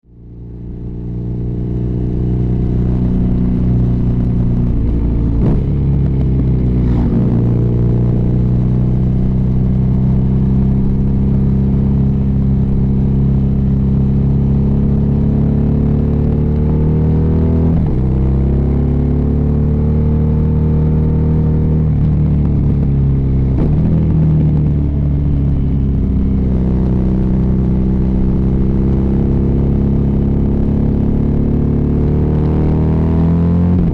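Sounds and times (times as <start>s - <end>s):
motorcycle engine running: 0.1s - 33.9s.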